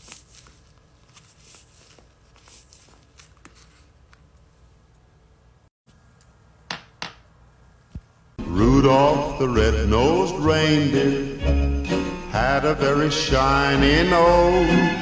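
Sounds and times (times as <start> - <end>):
paper rustling and crinkling: 0.0 - 4.6.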